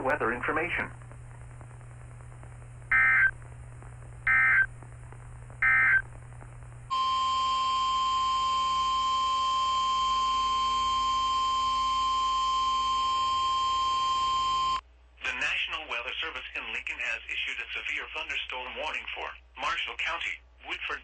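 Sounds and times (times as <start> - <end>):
steady alarm tone: 6.9 - 14.8.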